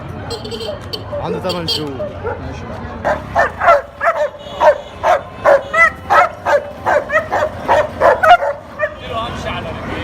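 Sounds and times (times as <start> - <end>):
dog barking: 1.1 - 9.0.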